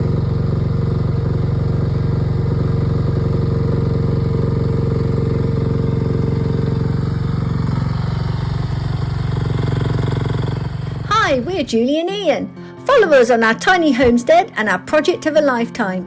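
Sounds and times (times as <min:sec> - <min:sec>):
excavator engine running: 0:00.0 - 0:12.4.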